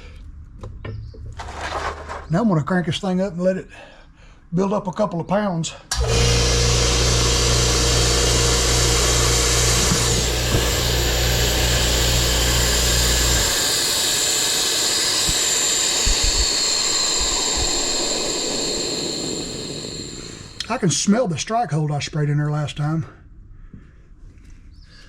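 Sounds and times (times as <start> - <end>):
compressed air hissing: 5.9 - 20.7
air compressor motor running: 5.9 - 20.8.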